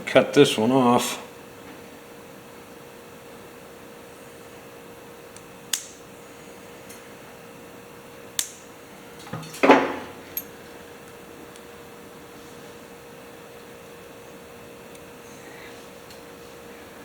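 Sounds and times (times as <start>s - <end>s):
side cutters snipping metal: 5.7s - 6.0s, 8.4s - 8.7s.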